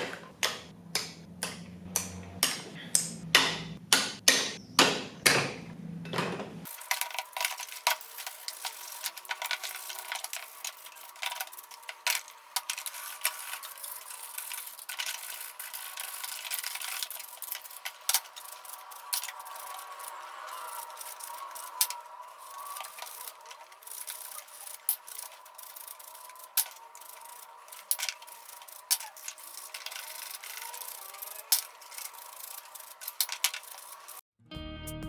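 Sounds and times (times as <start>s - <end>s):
small clicks and scrapes: 6.6s - 34.2s.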